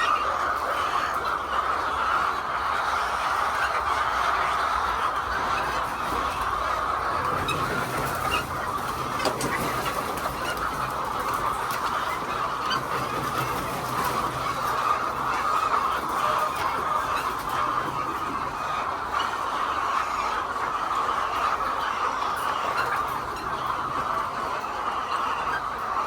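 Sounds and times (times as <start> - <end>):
flock of hens clucking: 0.0 - 26.0.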